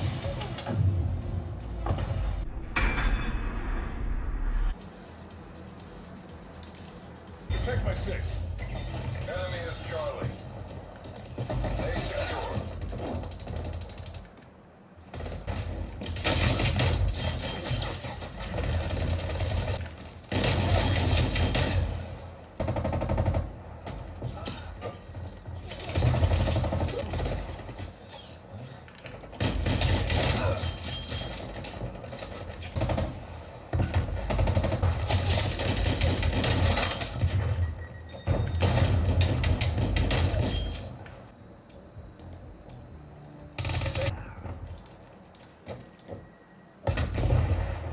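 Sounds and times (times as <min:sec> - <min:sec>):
quiet game sound: 0:00.0 - 0:47.9
video game automatic gunfire: 0:15.0 - 0:24.0, 0:25.6 - 0:28.0, 0:29.0 - 0:37.8.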